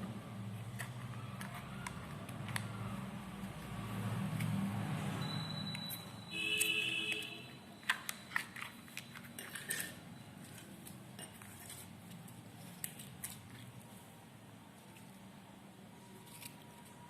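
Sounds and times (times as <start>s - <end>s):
utensils clicking and scraping containers: 5.7s - 13.8s.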